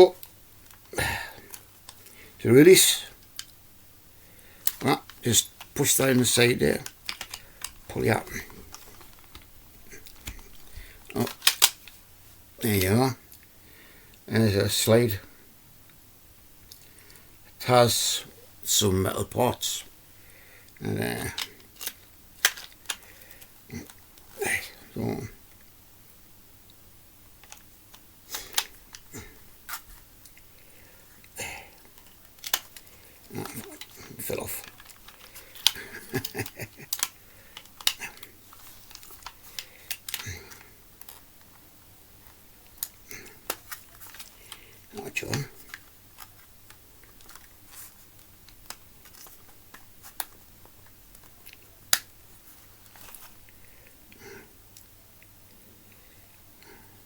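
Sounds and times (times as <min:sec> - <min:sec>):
small clicks and taps of pistol parts: 0:04.6 - 0:05.8, 0:06.8 - 0:07.9, 0:10.1 - 0:12.0, 0:21.4 - 0:23.5, 0:27.4 - 0:29.1, 0:31.9 - 0:32.9, 0:34.6 - 0:41.2.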